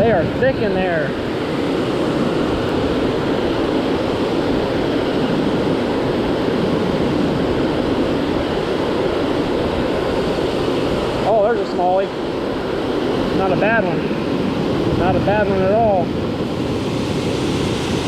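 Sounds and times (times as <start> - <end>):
river water rushing over dam: 16.4 - 18.0.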